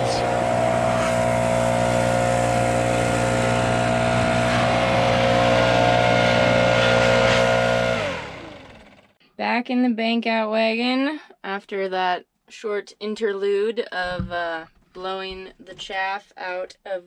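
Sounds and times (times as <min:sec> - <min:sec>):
gas blower running: 0:00.0 - 0:09.2.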